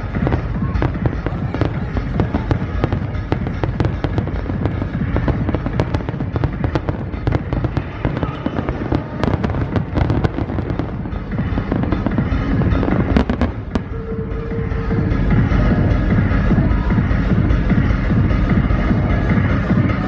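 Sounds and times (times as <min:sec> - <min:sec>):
fireworks bangs and crackles: 0:00.0 - 0:17.1
deep rumble: 0:00.0 - 0:20.0.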